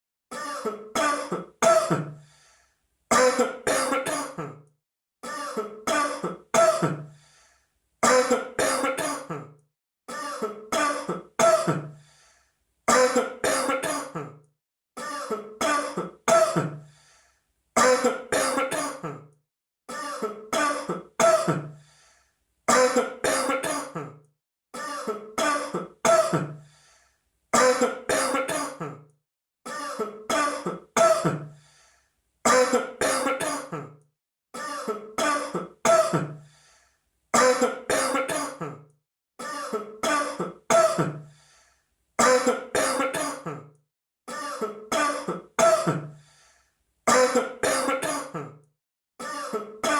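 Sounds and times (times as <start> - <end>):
person coughing: 0.3 - 2.2, 3.1 - 7.1, 8.0 - 12.0, 12.9 - 14.4, 15.0 - 16.8, 17.8 - 19.3, 19.9 - 21.7, 22.7 - 24.2, 24.8 - 26.6, 27.6 - 29.1, 29.7 - 31.5, 32.5 - 34.0, 34.6 - 36.4, 37.4 - 41.2, 42.2 - 46.2, 47.1 - 48.6, 49.2 - 49.9.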